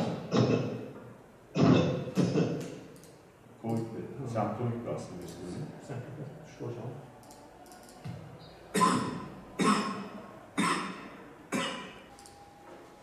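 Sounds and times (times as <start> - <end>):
hard coughs: 0.2 - 0.9, 1.5 - 2.6, 8.7 - 12.0.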